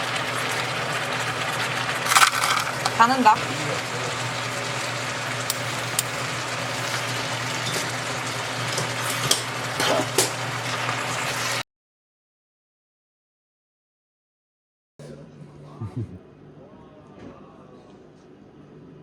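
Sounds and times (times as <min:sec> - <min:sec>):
liquid boiling and bubbling: 0:00.0 - 0:11.6.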